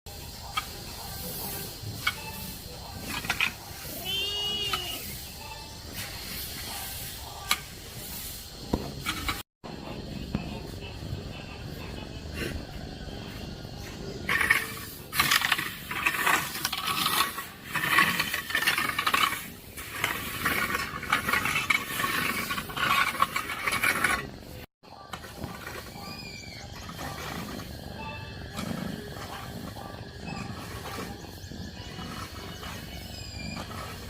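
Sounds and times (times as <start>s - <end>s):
high squeaky calls: 25.8s - 34.0s.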